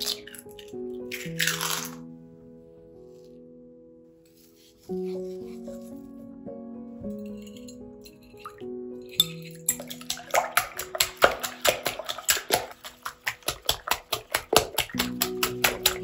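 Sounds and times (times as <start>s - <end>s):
clicking percussion beat: 13.3s - 16.0s.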